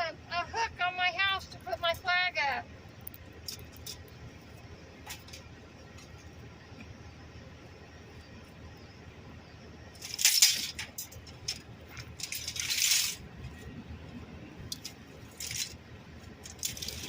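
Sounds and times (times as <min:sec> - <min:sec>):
light clinking: 0:10.0 - 0:13.7, 0:14.7 - 0:17.0
rustling: 0:10.0 - 0:13.8, 0:14.7 - 0:17.0.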